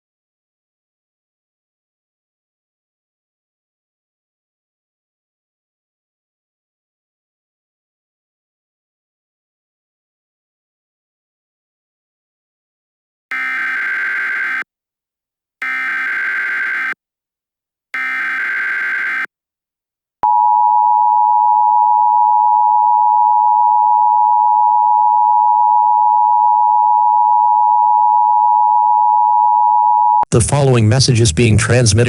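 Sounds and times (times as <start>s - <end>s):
two-tone alert signal: 13.3s - 14.6s, 15.6s - 17.0s, 18.0s - 19.3s
warbling digital data tones: 13.3s - 14.6s, 15.6s - 17.0s, 18.0s - 19.3s.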